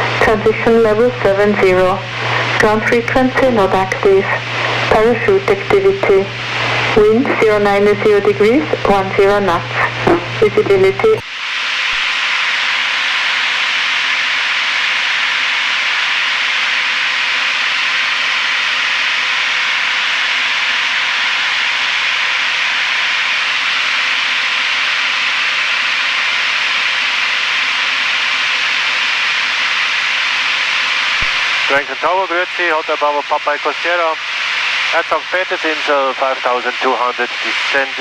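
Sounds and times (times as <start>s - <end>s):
radio intercom hiss: 0.0s - 11.3s, 30.3s - 38.0s
faint steady hum tone: 0.0s - 11.4s.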